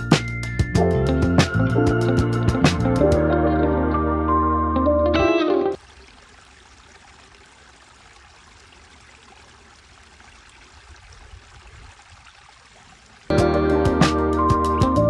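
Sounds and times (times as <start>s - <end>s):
flowing water rushing: 5.7s - 15.0s.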